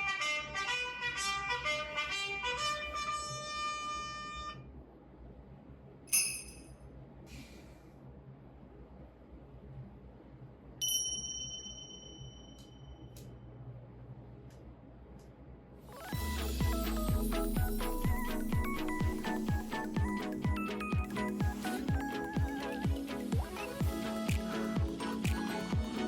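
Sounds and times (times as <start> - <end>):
bright dings: 6.1 - 6.7, 10.8 - 13.2.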